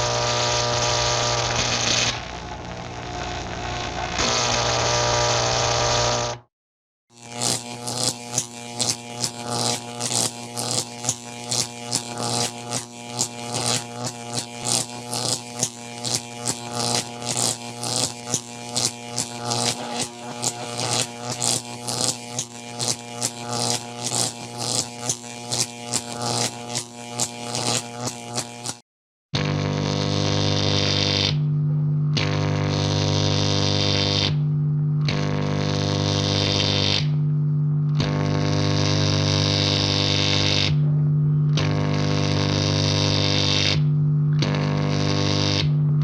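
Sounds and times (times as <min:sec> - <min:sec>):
sparking crackles: 0:00.0 - 0:06.3, 0:07.2 - 0:28.8
electric buzzing hum: 0:00.0 - 0:06.4, 0:07.1 - 0:28.8, 0:29.4 - 0:46.0.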